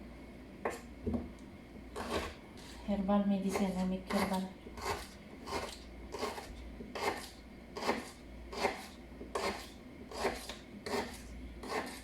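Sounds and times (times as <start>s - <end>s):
knife slicing ginger on board: 2.0s - 2.8s, 3.4s - 12.0s.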